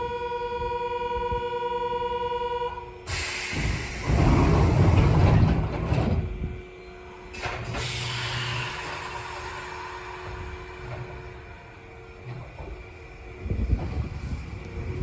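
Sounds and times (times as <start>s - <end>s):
train doors closing with air hiss: 3.0s - 15.0s
train rumble: 3.0s - 15.0s.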